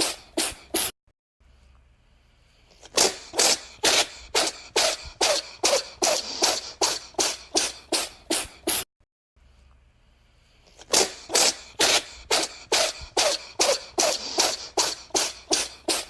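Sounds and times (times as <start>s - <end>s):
cat sneezing: 0.0s - 1.0s, 2.8s - 8.9s, 10.7s - 16.0s.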